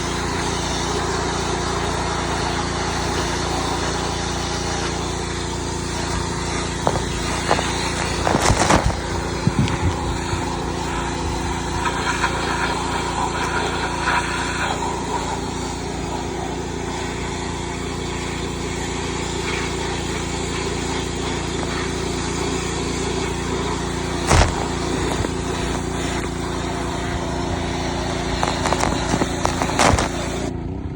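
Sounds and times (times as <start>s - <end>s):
water spray hissing: 0.0s - 30.5s
pressure washer engine hum: 0.0s - 30.9s.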